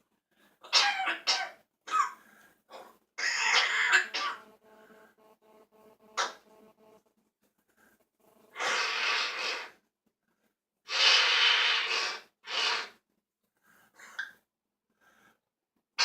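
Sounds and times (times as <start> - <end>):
wheezy rasping coughing: 0.6 - 4.4, 6.2 - 6.4.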